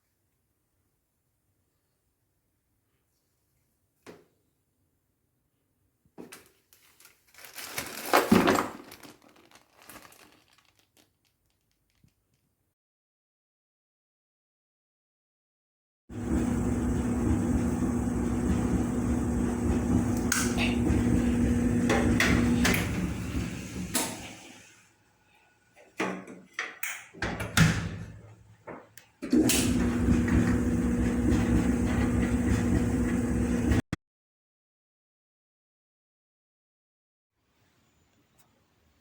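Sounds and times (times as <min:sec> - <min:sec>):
clothes dryer humming: 0:16.1 - 0:24.9, 0:27.2 - 0:33.8.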